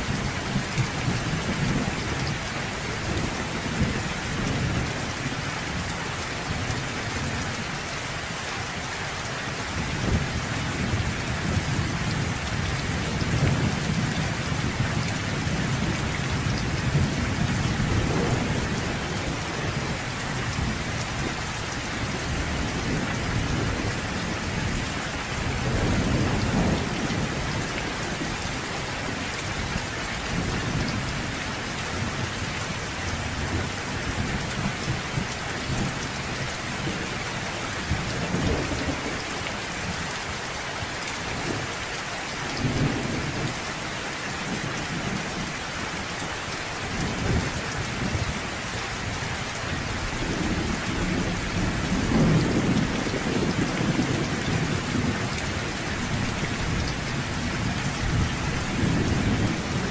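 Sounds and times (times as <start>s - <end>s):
steady rain falling: 0.0s - 59.9s
low thunder rumbles: 10.0s - 21.4s, 22.0s - 29.3s, 50.1s - 59.9s.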